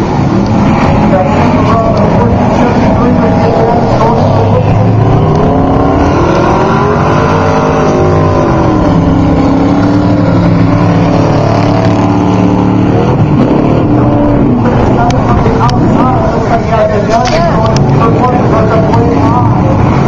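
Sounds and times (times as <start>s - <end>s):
race truck engine revving hard: 0.0s - 20.0s.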